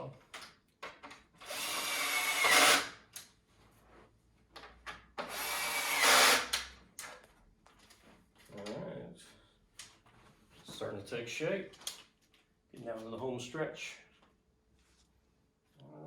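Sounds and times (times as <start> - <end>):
power drill driving bolts: 1.4 - 3.0, 5.2 - 6.7.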